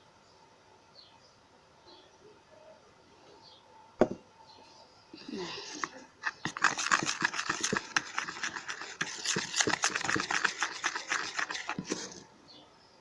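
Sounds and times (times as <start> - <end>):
utensil stirring slime in container: 5.2 - 12.3.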